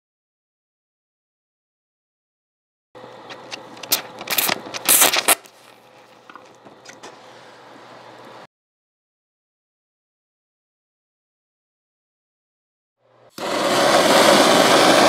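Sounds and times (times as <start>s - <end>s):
steady hum: 3.0s - 8.5s
plastic crackling under torch: 3.3s - 7.1s.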